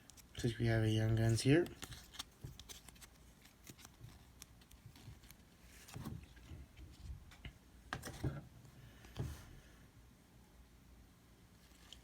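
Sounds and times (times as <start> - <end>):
trading cards clicking and rustling: 1.1 - 6.5.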